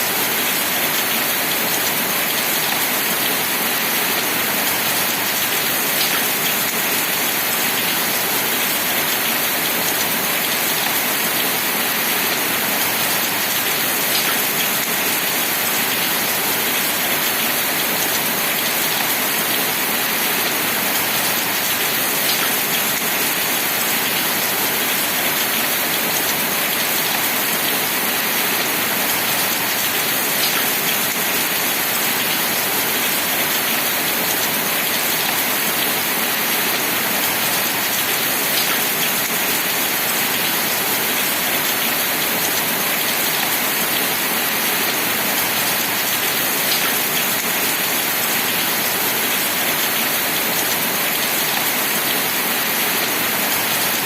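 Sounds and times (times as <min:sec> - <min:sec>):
steady dense rain: 0:00.0 - 0:54.0.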